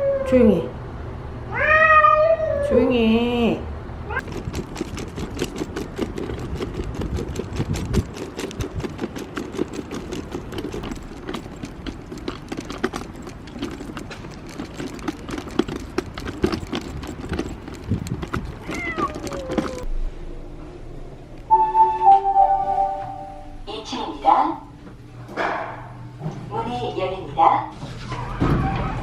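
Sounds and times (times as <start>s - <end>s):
cat meowing: 1.5s - 2.7s, 18.6s - 19.8s
rapid clicks and clatter: 4.2s - 19.9s.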